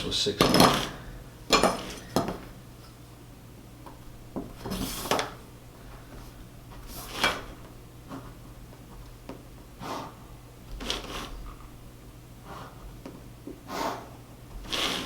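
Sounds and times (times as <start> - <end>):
pencil scraping on paper: 6.9 - 7.5, 10.8 - 11.6, 13.7 - 15.0.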